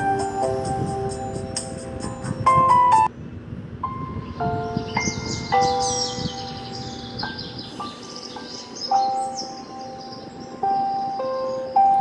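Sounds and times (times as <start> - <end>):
high bird-like chirps: 4.1 - 12.0.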